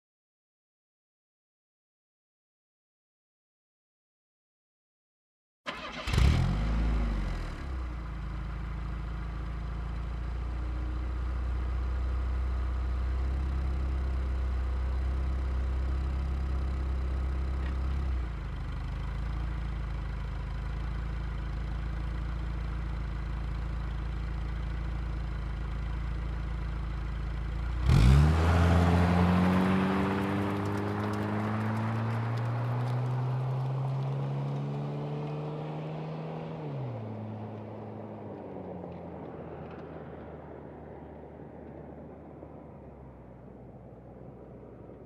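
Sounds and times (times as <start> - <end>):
car engine starting and idling: 5.7 - 35.3, 37.0 - 45.0
car engine revving: 27.6 - 37.8.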